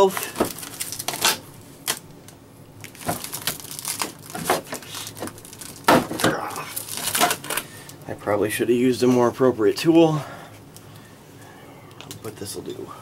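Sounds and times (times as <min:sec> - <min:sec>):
packaging rustling and crinkling: 0:00.0 - 0:08.0.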